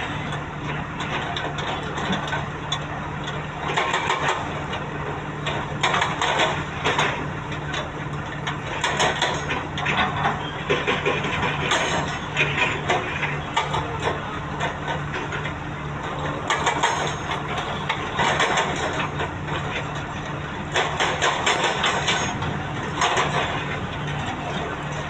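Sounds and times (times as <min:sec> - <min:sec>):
excavator engine running: 0:00.0 - 0:25.0.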